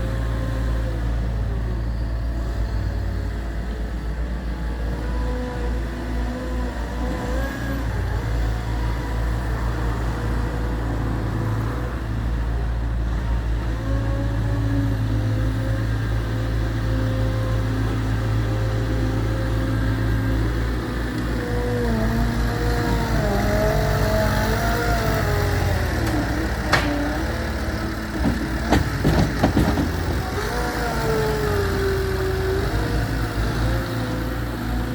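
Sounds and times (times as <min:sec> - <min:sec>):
loader diesel engine droning: 0:00.0 - 0:34.9
sharp knocks: 0:26.7 - 0:27.2, 0:28.2 - 0:30.2.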